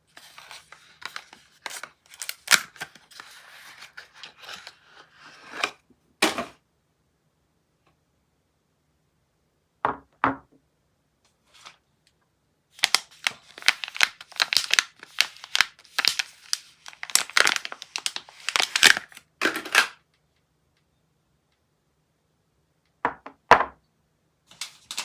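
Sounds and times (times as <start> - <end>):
wrapper crinkling and tearing: 0.2 - 4.8, 12.8 - 20.0, 24.5 - 25.0.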